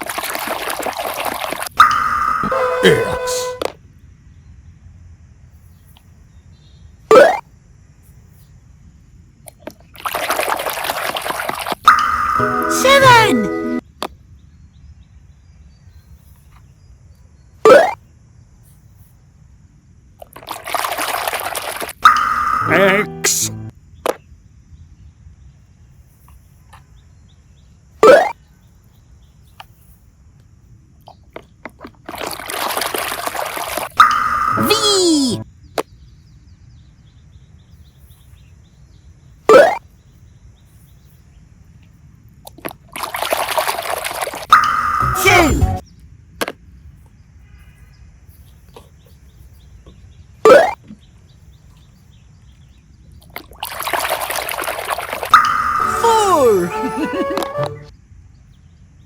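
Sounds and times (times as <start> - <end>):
rising sound effect: 55.4 - 57.9.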